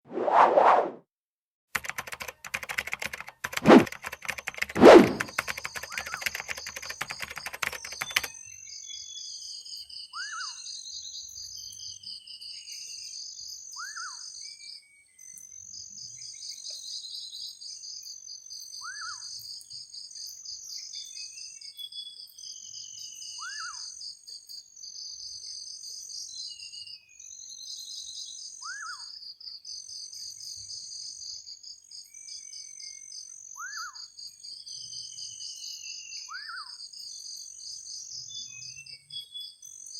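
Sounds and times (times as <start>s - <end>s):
rapid clatter of clicks: 1.8s - 8.3s.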